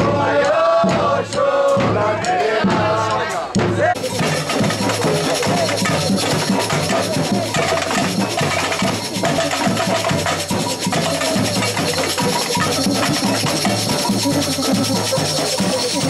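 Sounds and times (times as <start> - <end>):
samba percussion band drumming: 0.0 - 16.0.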